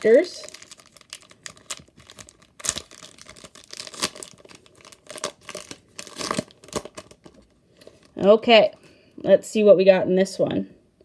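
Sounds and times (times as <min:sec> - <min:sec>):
wrapper tearing and crinkling: 0:00.0 - 0:08.3.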